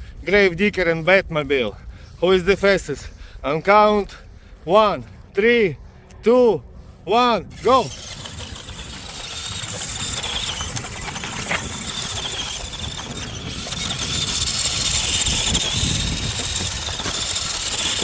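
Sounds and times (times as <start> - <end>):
low rumble: 4.4 - 18.0
electric motor whine: 7.4 - 18.0.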